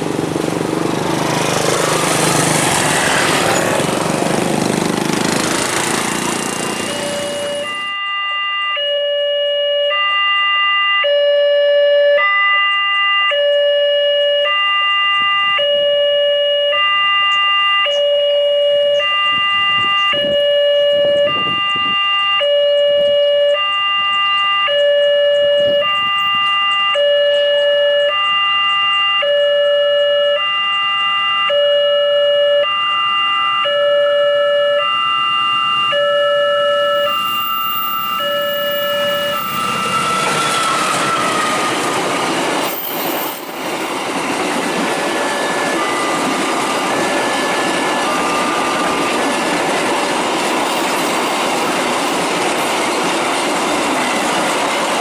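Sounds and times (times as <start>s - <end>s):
loud rushing noise: 0.0s - 7.6s
two-tone warning siren: 0.9s - 55.0s.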